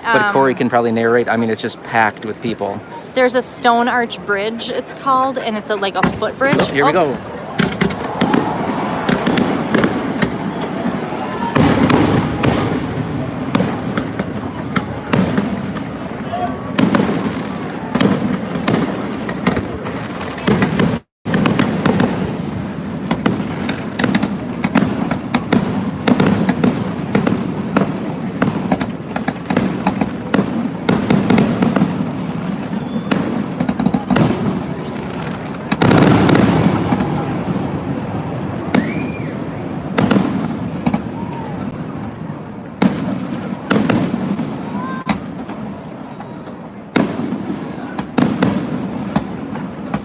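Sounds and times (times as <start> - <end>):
fireworks bangs and crackles: 0.0 - 50.0.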